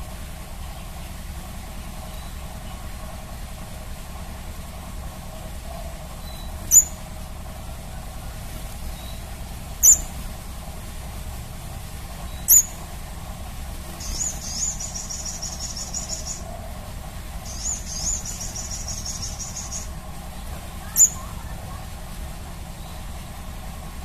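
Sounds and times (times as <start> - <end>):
high-pitched bird trills: 5.8 - 7.0, 9.8 - 10.1, 12.3 - 12.8, 14.0 - 16.5, 17.4 - 20.0, 20.8 - 21.3.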